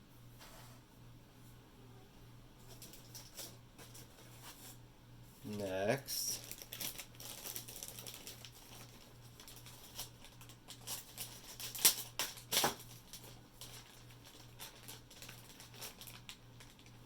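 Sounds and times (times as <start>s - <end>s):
packaging rustling: 5.5s - 17.0s.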